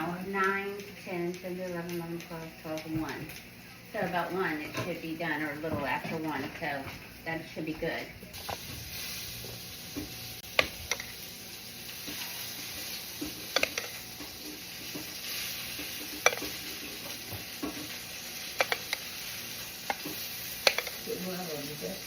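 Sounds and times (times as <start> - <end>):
food sizzling in a frying pan: 0.0 - 22.0
utensil tapping against pan: 13.2 - 14.3, 15.8 - 16.6, 18.6 - 19.1, 19.9 - 21.0.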